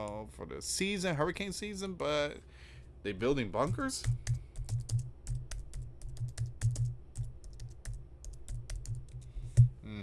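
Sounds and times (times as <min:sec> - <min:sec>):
typing on computer keyboard: 0:03.6 - 0:09.7.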